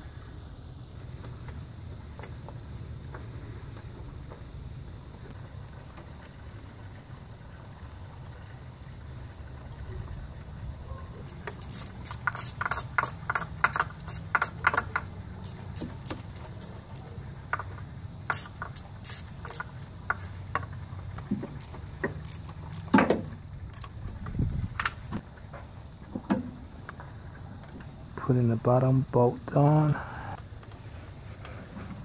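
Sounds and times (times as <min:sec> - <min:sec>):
ratchet wrench clicking: 0:11.2 - 0:17.6, 0:18.2 - 0:20.3, 0:21.6 - 0:24.0.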